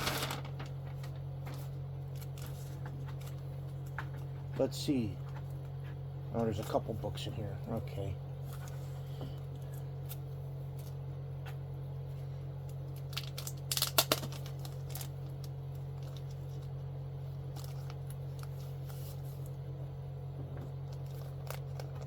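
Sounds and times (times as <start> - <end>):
packaging rustling and crinkling: 12.9 - 16.8, 20.5 - 22.0.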